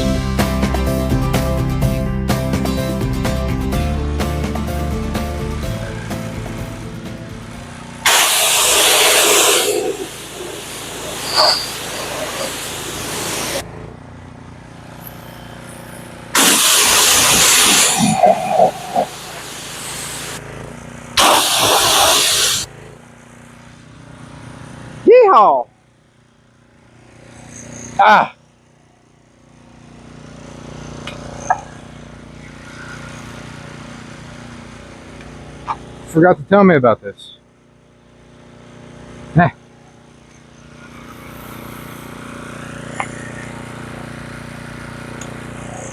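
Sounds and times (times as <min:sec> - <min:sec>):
pressure washer motor running: 0:04.2 - 0:25.0, 0:25.8 - 0:36.1, 0:37.4 - 0:45.9
water jet hissing: 0:08.0 - 0:13.6, 0:15.6 - 0:20.4, 0:21.2 - 0:22.7, 0:40.7 - 0:44.7.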